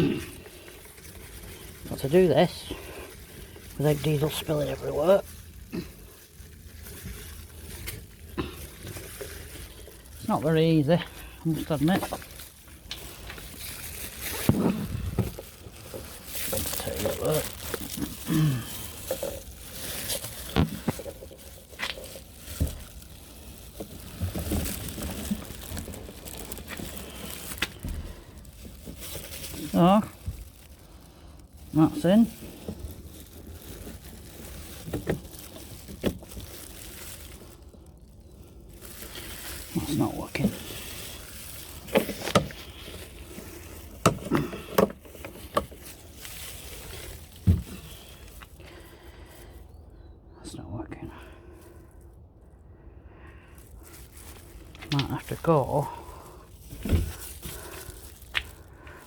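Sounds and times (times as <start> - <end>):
plastic rustling and crinkling: 0.0 - 50.1, 50.7 - 59.0
diesel can knocking and clunking: 44.0 - 45.7.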